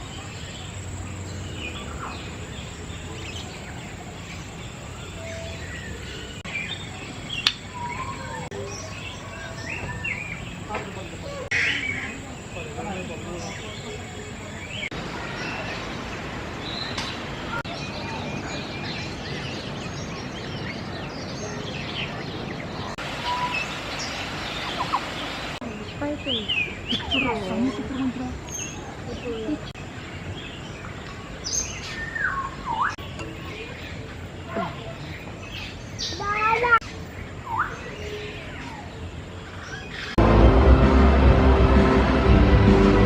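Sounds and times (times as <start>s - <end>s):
steady background noise: 0.0s - 43.0s
birds chirping and whistling: 0.2s - 12.2s, 16.7s - 25.2s, 31.4s - 34.1s, 35.5s - 38.9s
steady low hum: 40.2s - 43.0s.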